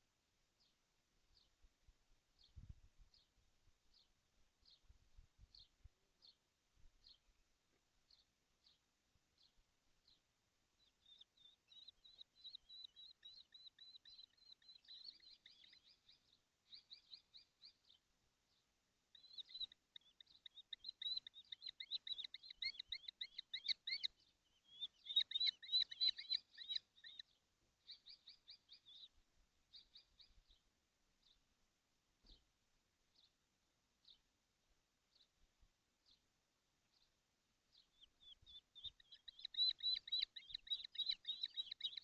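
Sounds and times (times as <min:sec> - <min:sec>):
young kestrels calling: 0:10.8 - 0:31.4, 0:36.9 - 0:42.0.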